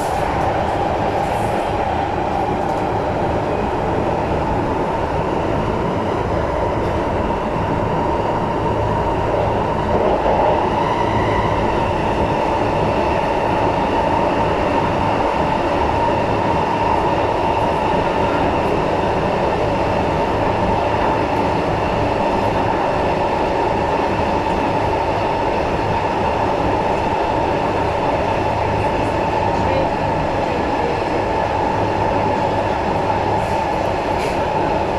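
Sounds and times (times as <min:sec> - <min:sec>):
steady train whine: 0:00.0 - 0:34.9
train wheels rumbling on track: 0:00.0 - 0:34.9.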